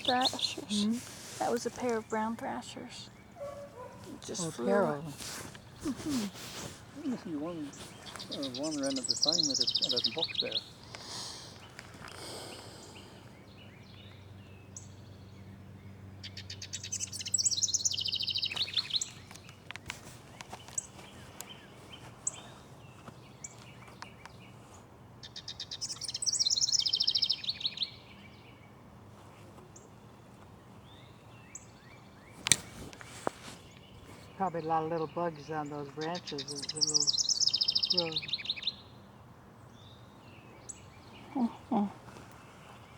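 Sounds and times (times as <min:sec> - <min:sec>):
bird chirps: 0:00.0 - 0:11.9, 0:16.2 - 0:19.6, 0:25.2 - 0:28.6, 0:33.6 - 0:39.0
songbird rapid trills: 0:00.0 - 0:14.1, 0:16.2 - 0:22.6, 0:30.9 - 0:38.8.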